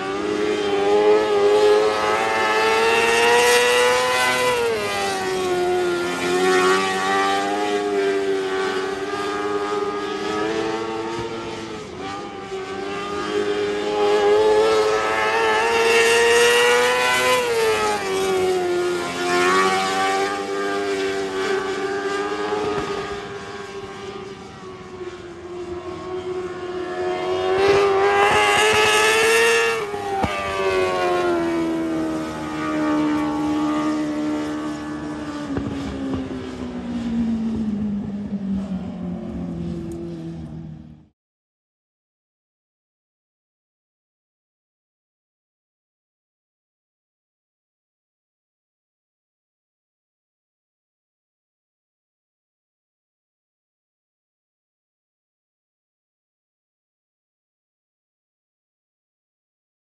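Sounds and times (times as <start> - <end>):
race car engine revving: 0.1 - 40.2.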